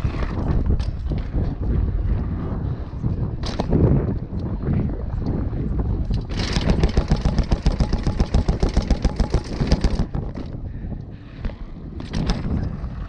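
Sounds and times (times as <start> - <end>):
mountain bike rattling over rough ground: 0.0 - 13.0
bike knocks: 6.2 - 10.6, 11.4 - 12.7.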